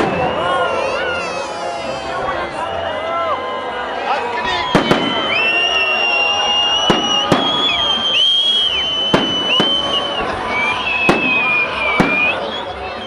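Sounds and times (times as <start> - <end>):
high whistling tones: 4.5 - 13.0.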